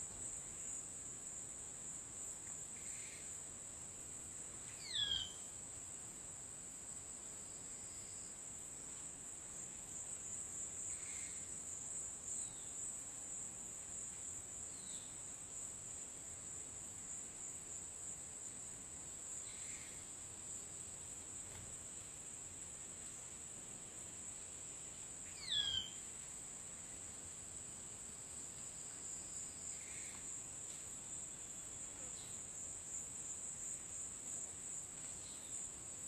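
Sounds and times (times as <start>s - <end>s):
insect drone: 0.0s - 36.0s
faint bird chirps: 4.7s - 5.5s, 25.3s - 26.0s.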